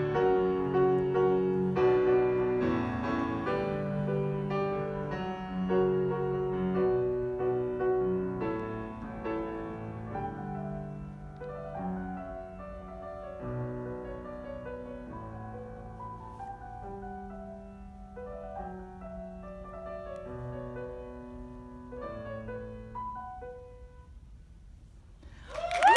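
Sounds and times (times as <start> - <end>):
piano playing slow chords: 0.0 - 24.1.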